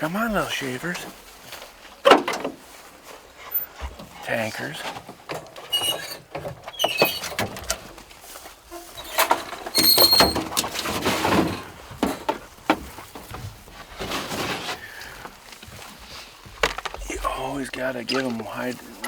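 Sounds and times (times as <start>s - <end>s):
knocks and clanks: 0.2s - 2.7s, 9.0s - 14.8s.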